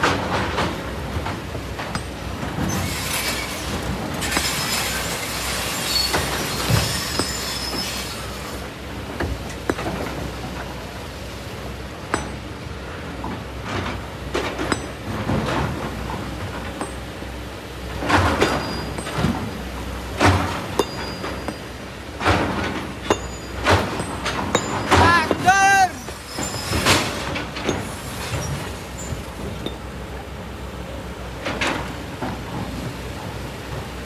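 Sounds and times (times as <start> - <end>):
bucket scraping through stones: 2.6 - 8.6, 26.0 - 29.3
squealing metal scrape: 2.6 - 8.7, 18.4 - 19.1, 26.0 - 27.4
rock knocks and clinks: 16.6 - 17.2, 20.2 - 26.6.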